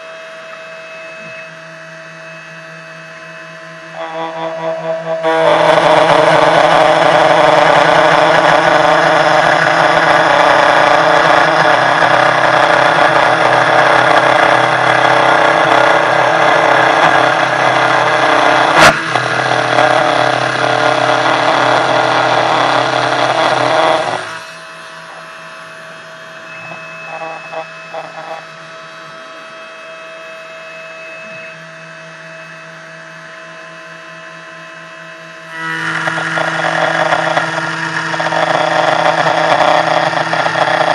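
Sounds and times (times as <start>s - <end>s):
spindle whine: 0.0s - 40.9s
router cutting noise: 3.2s - 29.7s, 35.3s - 40.9s.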